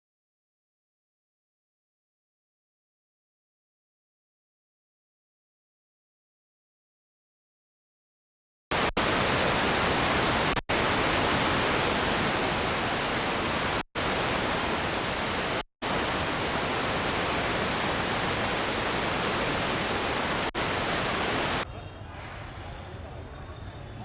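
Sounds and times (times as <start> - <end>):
loud static hiss: 8.7 - 21.6.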